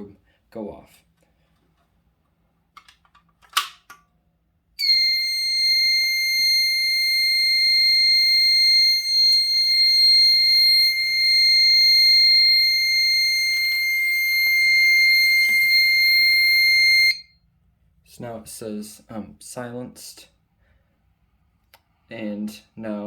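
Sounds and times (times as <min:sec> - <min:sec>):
fire alarm tone: 0:04.8 - 0:17.4.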